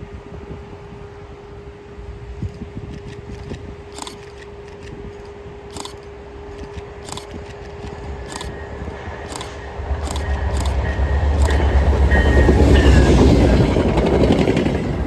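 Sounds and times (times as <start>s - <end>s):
train rumbling on rails: 0.0s - 15.0s
sharp wheel clacks on track: 9.2s - 12.3s.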